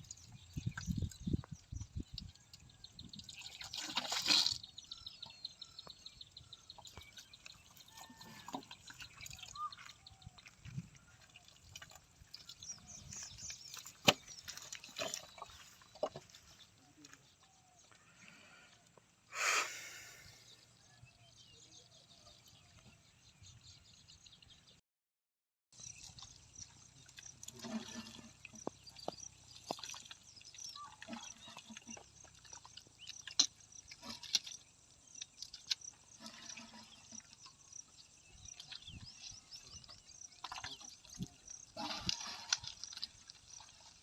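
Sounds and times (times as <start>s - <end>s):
water splashing and dripping: 0.0s - 4.6s, 6.8s - 16.4s, 26.0s - 37.6s, 38.3s - 44.0s.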